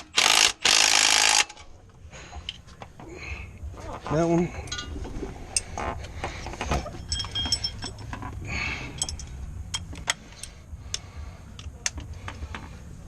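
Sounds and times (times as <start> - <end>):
metal hand tools clinking: 4.6 - 5.0, 6.8 - 10.6.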